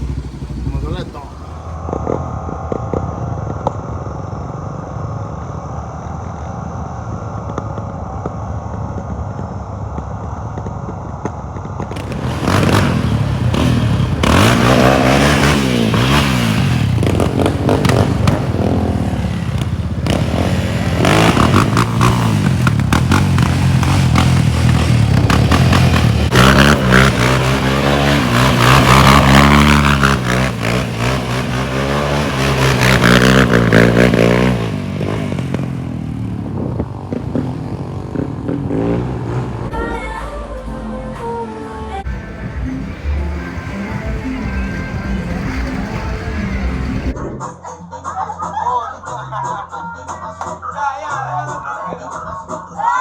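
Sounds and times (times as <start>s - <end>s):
vehicle engine revving: 0.0s - 2.1s, 11.6s - 47.4s.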